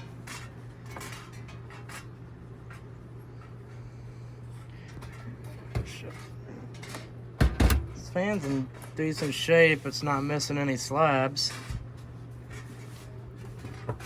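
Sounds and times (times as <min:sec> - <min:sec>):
steady low hum: 0:00.0 - 0:14.0
box fan clicks and knocks: 0:06.9 - 0:08.6.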